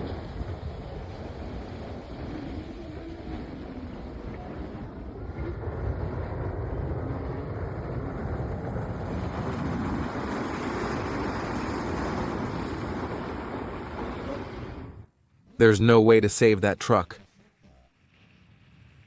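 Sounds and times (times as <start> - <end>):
floodwater rushing: 9.0 - 14.9.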